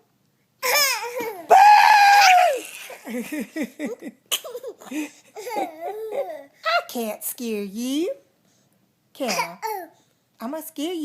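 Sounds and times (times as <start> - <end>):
toddler yelling: 0.6 - 2.7
toddler squealing with laughter: 0.6 - 3.0
toddler giggling: 3.0 - 6.5.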